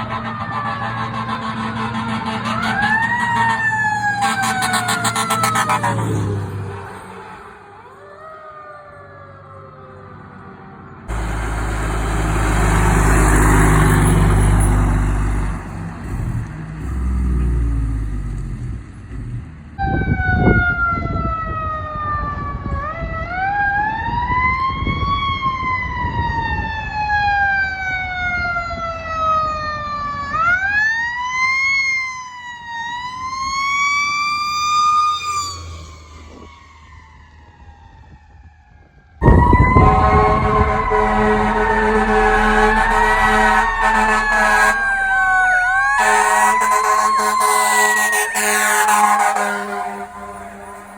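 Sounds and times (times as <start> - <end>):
low truck noise: 0.0 - 8.0, 10.1 - 21.0, 39.2 - 50.9
fire truck siren wailing: 0.0 - 17.0, 19.8 - 50.9.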